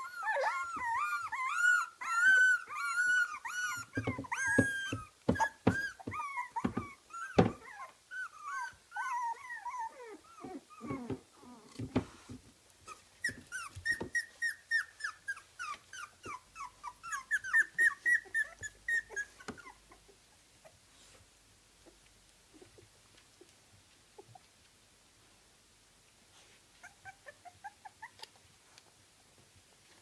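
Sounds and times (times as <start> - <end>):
puppies whimpering and squeaking: 0.0 - 21.2, 26.8 - 28.4.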